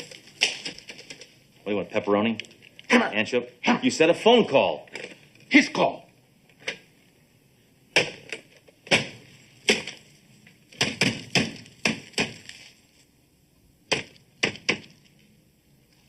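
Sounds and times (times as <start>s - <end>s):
sharp knocks: 10.8s - 12.5s, 13.9s - 15.0s.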